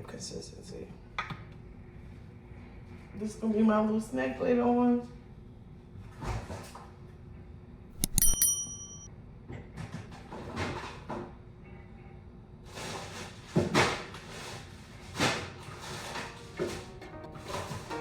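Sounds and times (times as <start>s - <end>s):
sharp metallic clink: 8.0s - 9.1s.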